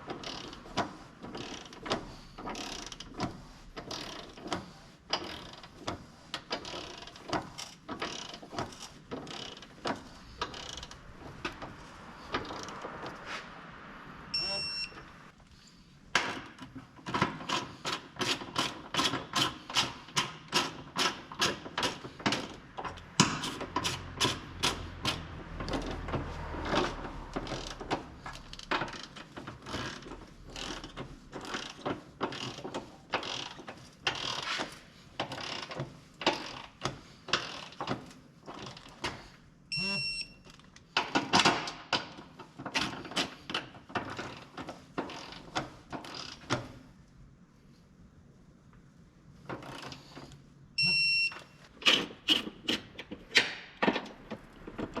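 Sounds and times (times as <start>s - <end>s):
short high electronic beep: 14.3s - 15.0s, 39.7s - 40.4s, 50.8s - 51.4s.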